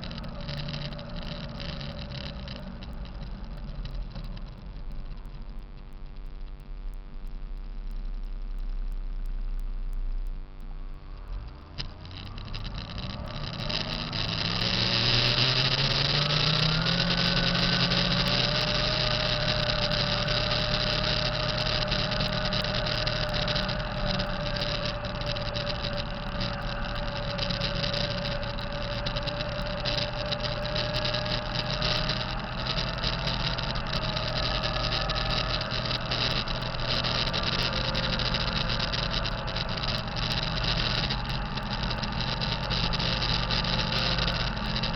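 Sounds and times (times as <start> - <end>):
turbo whine: 0.0 - 44.9
truck diesel engine running: 11.9 - 44.9.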